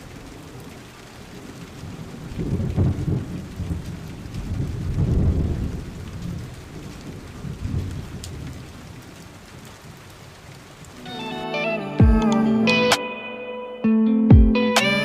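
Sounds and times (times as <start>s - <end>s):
thunder rumbling: 0.0s - 11.2s
heavy rain falling: 0.0s - 12.8s.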